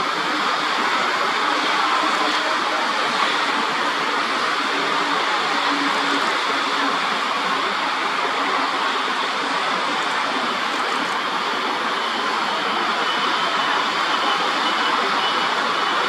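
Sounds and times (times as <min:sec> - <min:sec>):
steady rushing noise: 0:00.0 - 0:16.0.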